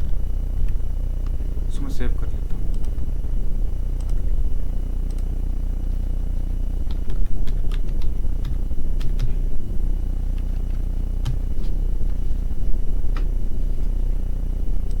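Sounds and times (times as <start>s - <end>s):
steady low hum: 0.0s - 15.0s
keyboard and mouse clicks: 2.5s - 3.0s, 4.0s - 4.2s, 6.9s - 9.4s.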